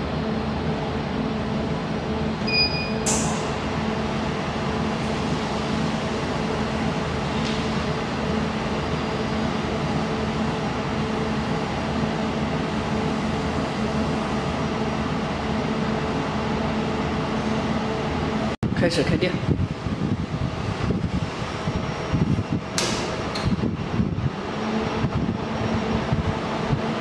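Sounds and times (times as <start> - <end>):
machine hum with fan noise: 0.0 - 27.0.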